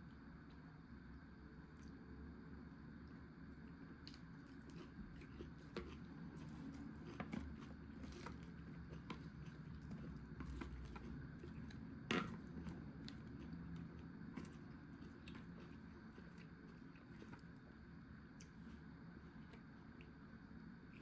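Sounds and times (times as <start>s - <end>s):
steady low hum: 0.0s - 21.0s
person chewing: 4.0s - 17.6s.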